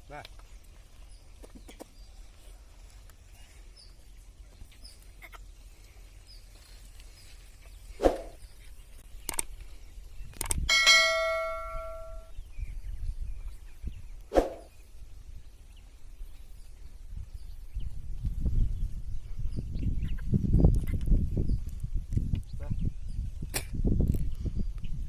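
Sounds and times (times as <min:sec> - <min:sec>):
metal bell ringing: 0:10.7 - 0:12.3
sharp metal knocks: 0:10.7 - 0:12.3.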